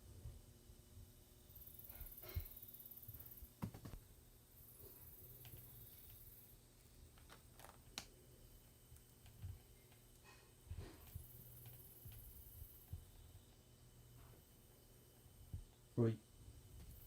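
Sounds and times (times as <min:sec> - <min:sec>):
faint clicks and soft taps: 0:07.1 - 0:13.6.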